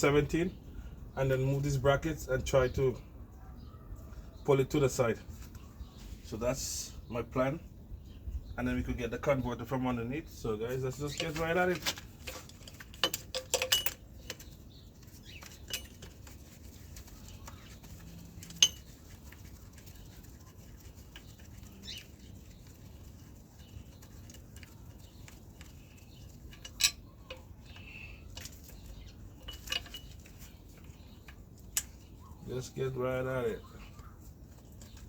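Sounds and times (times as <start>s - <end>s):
hand tools clinking on metal: 10.8s - 32.9s.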